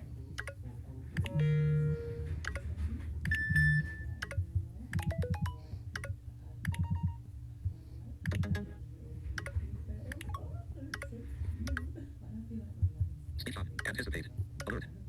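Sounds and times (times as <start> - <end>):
synthesized chimes and beeps: 5.0 - 5.6.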